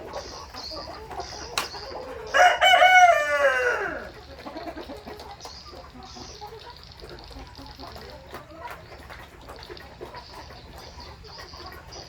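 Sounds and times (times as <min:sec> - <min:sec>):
hens clucking softly: 0:00.0 - 0:12.0
rooster crowing: 0:02.1 - 0:04.1.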